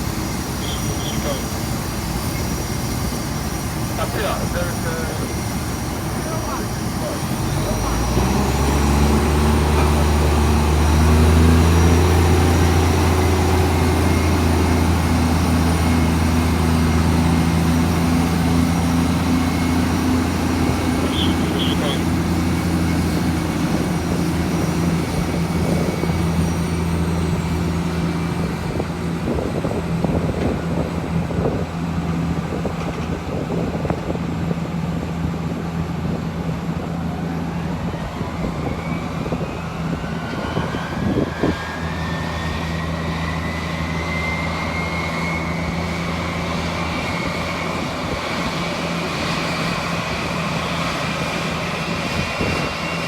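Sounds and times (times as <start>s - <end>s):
jet turbine whine rising: 0.0s - 53.0s
low engine drone: 0.0s - 53.0s.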